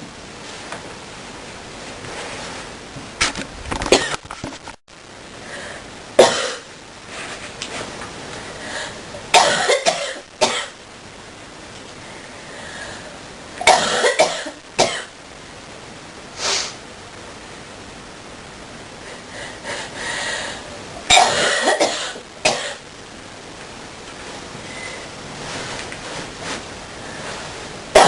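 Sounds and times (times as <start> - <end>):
person coughing deeply: 6.2 - 6.7, 9.4 - 10.7, 13.6 - 15.1, 21.1 - 22.8.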